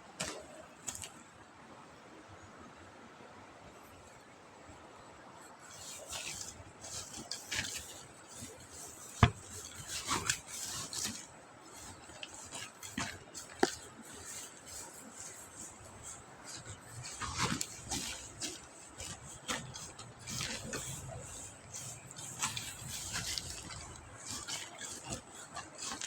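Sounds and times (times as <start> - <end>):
sawdust scraping and rustling: 5.5 - 26.0.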